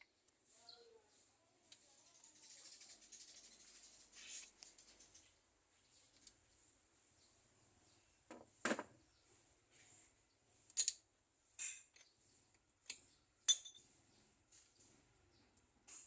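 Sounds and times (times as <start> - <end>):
metal tools clinking: 10.7 - 11.0, 12.8 - 14.0.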